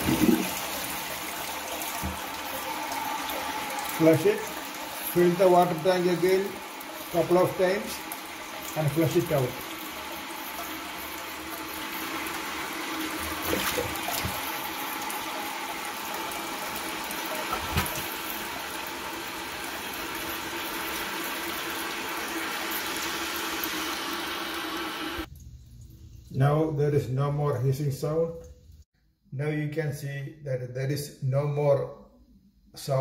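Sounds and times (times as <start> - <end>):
toilet tank refilling: 0.0 - 25.4.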